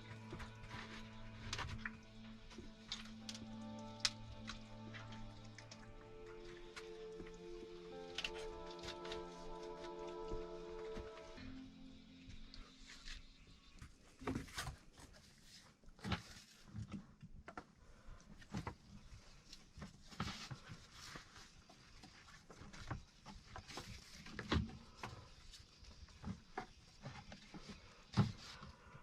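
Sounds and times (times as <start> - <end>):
objects being handled: 0.0 - 17.1.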